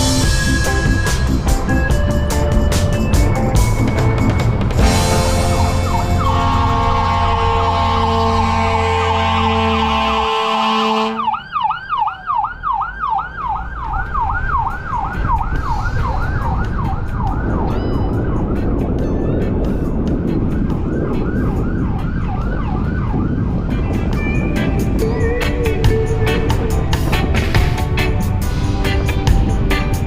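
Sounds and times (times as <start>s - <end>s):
background music: 0.0s - 11.4s, 14.0s - 30.0s
road noise: 0.0s - 30.0s
siren yelping: 5.4s - 19.3s, 20.6s - 23.9s.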